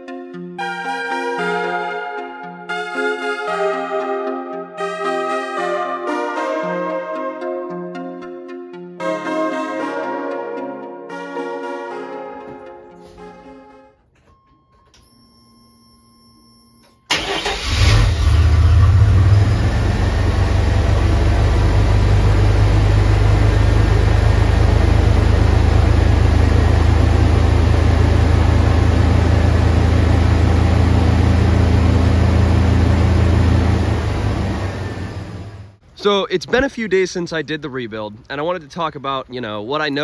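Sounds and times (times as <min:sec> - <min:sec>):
pickup truck engine starting and idling: 0:17.1 - 0:35.8.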